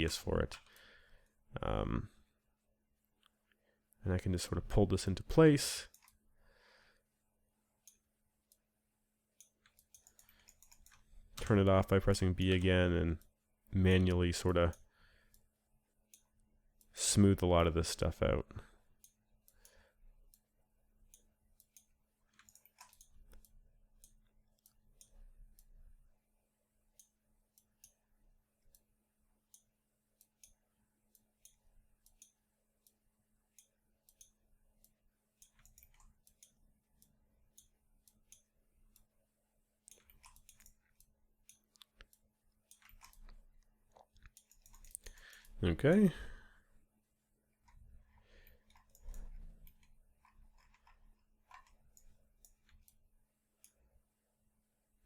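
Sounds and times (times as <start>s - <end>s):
faint steady hum: 0.0s - 55.0s
computer mouse clicks: 5.9s - 6.2s, 9.4s - 11.6s, 19.0s - 25.7s, 29.5s - 39.1s, 39.8s - 45.6s, 47.6s - 53.0s.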